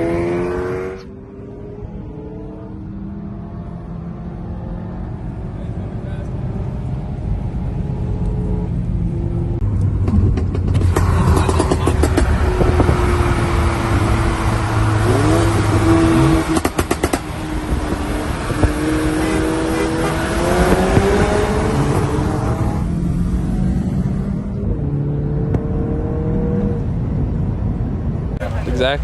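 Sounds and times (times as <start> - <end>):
car engine accelerating: 0.0 - 29.0
dense rushing noise: 9.6 - 18.8.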